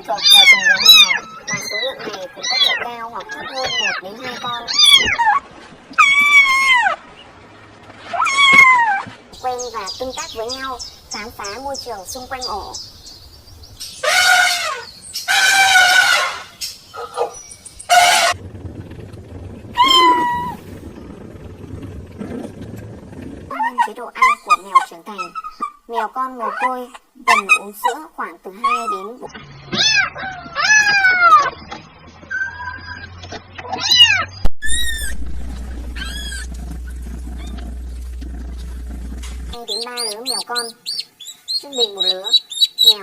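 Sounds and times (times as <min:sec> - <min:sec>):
kitten meowing: 0:00.2 - 0:02.8, 0:04.7 - 0:05.3, 0:19.8 - 0:20.6
kittens meowing: 0:00.2 - 0:05.3, 0:06.0 - 0:07.0, 0:19.8 - 0:20.6, 0:29.7 - 0:31.5
steady low hum: 0:09.3 - 0:13.9, 0:16.8 - 0:24.6, 0:34.6 - 0:41.2.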